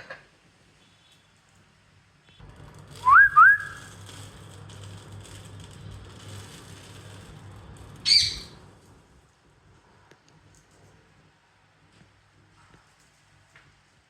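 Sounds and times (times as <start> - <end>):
parrot rising whistles: 3.0 - 3.8.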